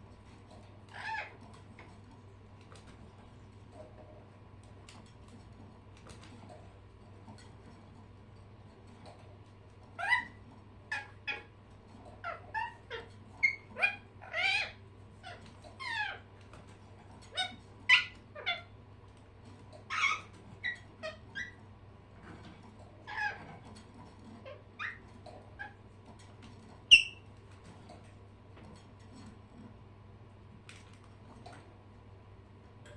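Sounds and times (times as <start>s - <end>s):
birds chirping and squawking: 0.2s - 2.0s, 9.8s - 18.8s, 19.5s - 28.1s.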